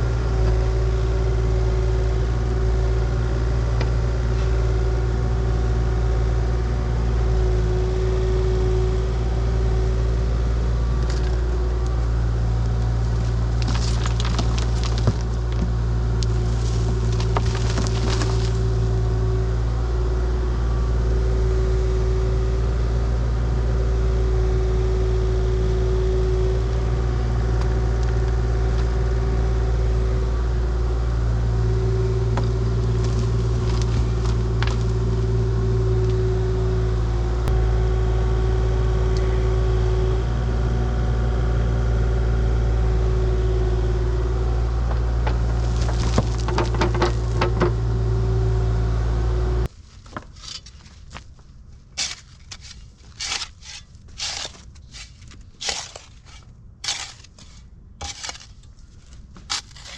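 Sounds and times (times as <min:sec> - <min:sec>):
diesel engine running: 0:00.0 - 0:49.8
crunching and crackling: 0:12.6 - 0:19.1, 0:32.3 - 0:35.3, 0:44.9 - 0:47.8.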